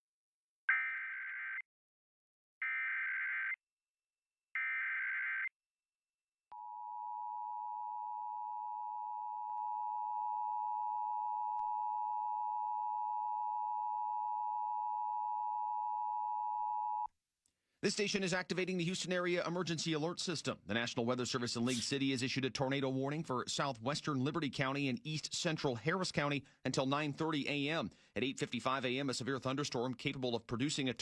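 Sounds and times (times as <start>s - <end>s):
digital data burst screeches: 21.7s - 21.9s.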